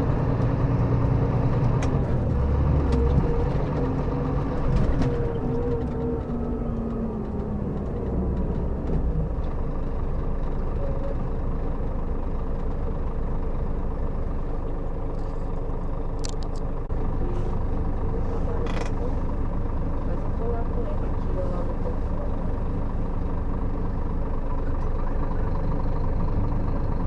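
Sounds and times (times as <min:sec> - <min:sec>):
coach diesel engine droning: 0:00.0 - 0:27.0
road noise: 0:00.0 - 0:27.0.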